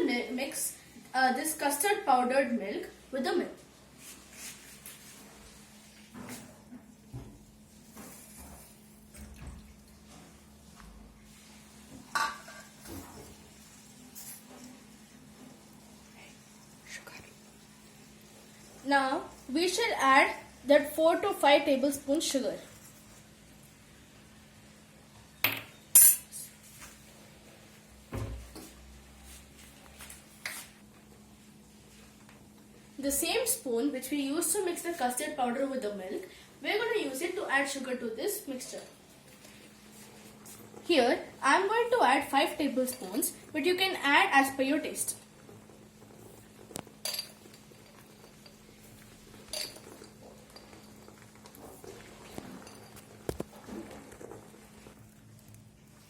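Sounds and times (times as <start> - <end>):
faint steady hum: 0.0 - 56.0
spoon and containers clinking: 46.7 - 48.7, 49.3 - 51.2, 52.2 - 53.5.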